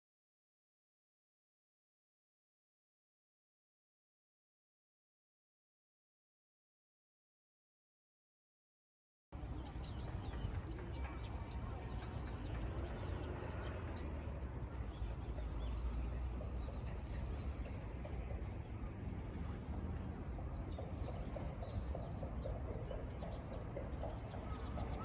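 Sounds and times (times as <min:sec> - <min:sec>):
outdoor background rush: 0:09.3 - 0:25.0
small birds chirping: 0:09.4 - 0:25.0.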